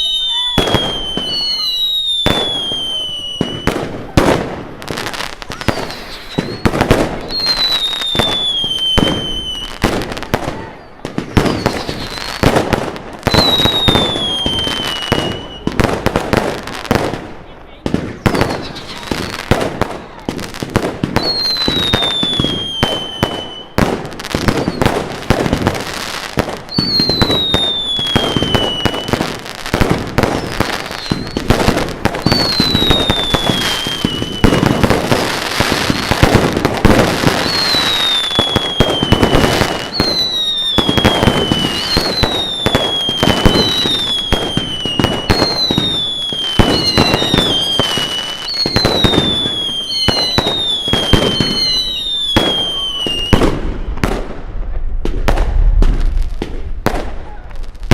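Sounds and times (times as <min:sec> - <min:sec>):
fireworks bangs and crackles: 0:00.0 - 0:57.9
whistling fireworks: 0:00.0 - 0:57.9.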